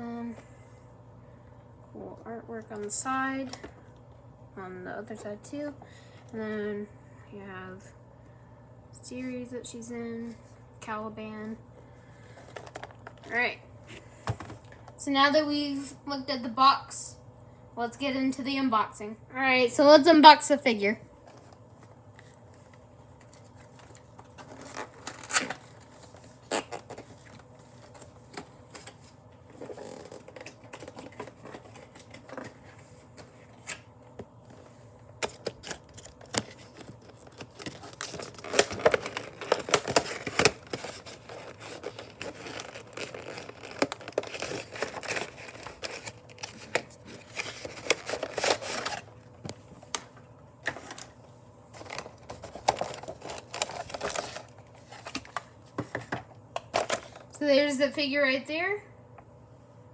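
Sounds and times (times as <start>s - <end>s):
cardboard and plastic crinkling: 12.2s - 14.9s, 21.2s - 57.3s.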